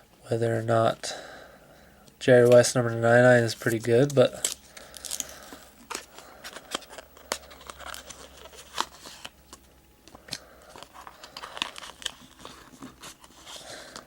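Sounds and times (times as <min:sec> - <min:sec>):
card and wrapper tearing: 0:03.7 - 0:09.3, 0:10.3 - 0:14.0.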